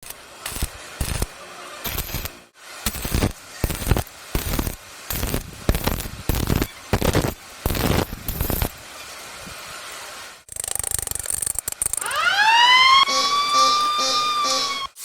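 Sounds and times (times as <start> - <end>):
welding hiss: 0.0 - 12.1
welding arc crackling: 0.0 - 12.5.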